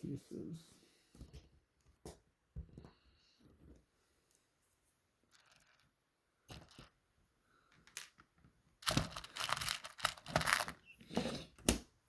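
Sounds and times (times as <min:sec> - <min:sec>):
plastic bricks clicking and rattling: 0:05.3 - 0:07.0, 0:07.7 - 0:10.8.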